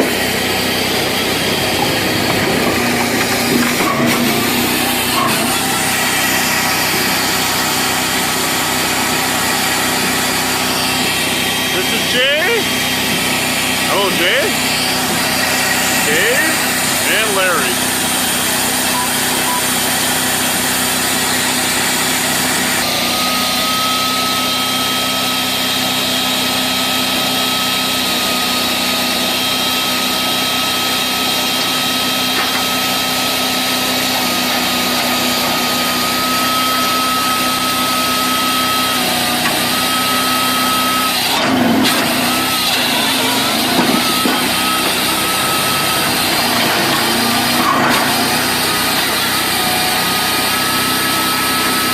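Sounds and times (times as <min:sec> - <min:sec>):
machine engine droning: 0:00.0 - 0:51.9.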